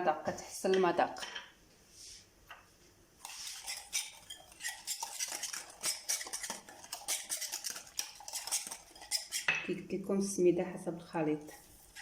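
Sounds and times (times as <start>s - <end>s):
metal utensil stirring batter: 3.2s - 10.0s, 11.2s - 12.0s.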